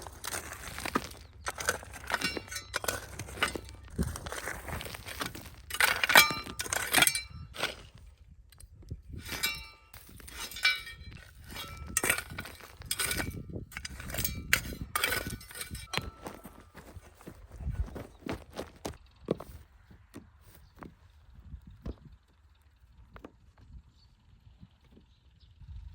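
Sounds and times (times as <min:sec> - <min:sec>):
hard objects clinking and knocking: 0:00.0 - 0:07.9, 0:09.2 - 0:16.8.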